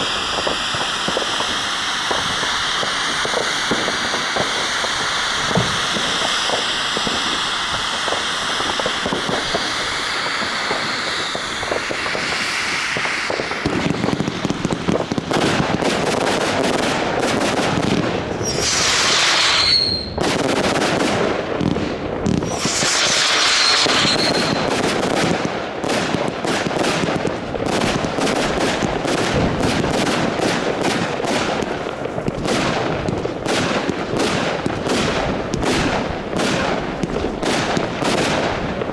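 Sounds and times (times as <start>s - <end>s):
fireworks hissing: 0.0s - 21.0s, 21.6s - 25.8s
fireworks shots and bangs: 0.0s - 38.9s
high hissing bursts: 18.4s - 20.2s, 22.5s - 24.7s.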